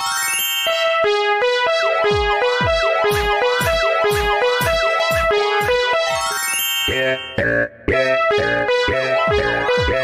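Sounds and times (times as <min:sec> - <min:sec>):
repeating two-note synth pattern: 0:00.0 - 0:10.0
kick drum thuds: 0:09.3 - 0:10.0.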